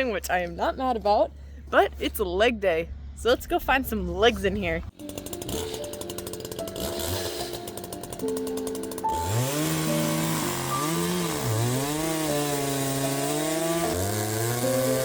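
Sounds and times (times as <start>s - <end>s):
chainsaw cutting log: 5.0s - 15.0s.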